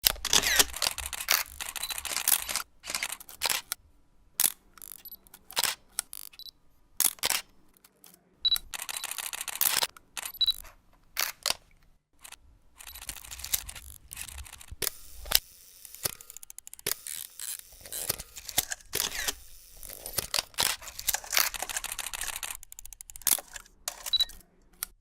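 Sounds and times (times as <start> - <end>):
mechanical clicking: 12.2 - 25.0.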